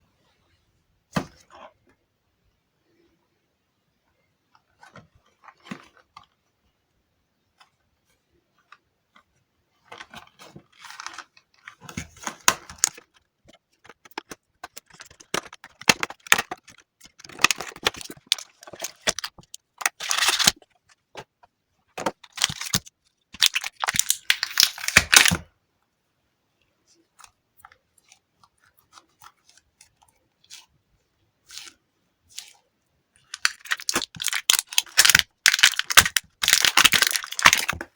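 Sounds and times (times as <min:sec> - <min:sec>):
sticky toy balls crackling: 0:12.2 - 0:20.8, 0:22.0 - 0:25.5, 0:31.4 - 0:37.9.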